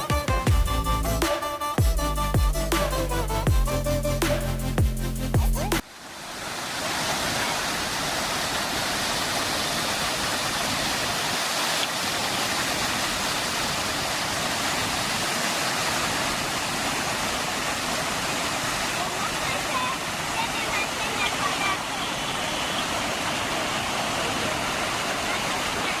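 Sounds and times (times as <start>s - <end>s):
background music: 0.0s - 5.8s
falling water rushing: 5.8s - 26.0s.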